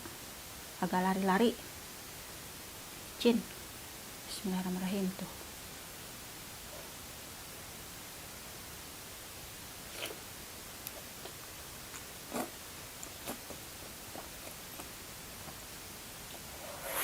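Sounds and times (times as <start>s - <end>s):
faint hiss: 0.0s - 17.0s
mouth sounds eating noodles: 9.9s - 10.3s, 10.9s - 15.1s.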